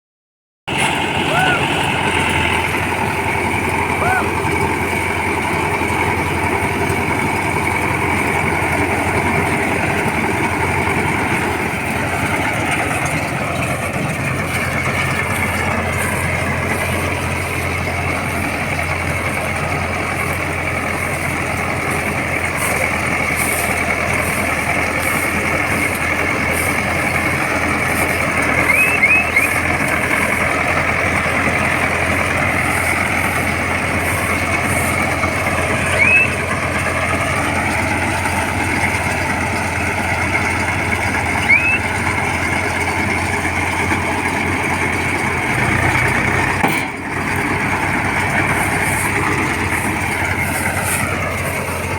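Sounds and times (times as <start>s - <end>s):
tractor engine running: 0.7s - 51.9s
rising squeaks: 23.1s - 30.7s, 34.1s - 37.0s, 40.1s - 42.6s.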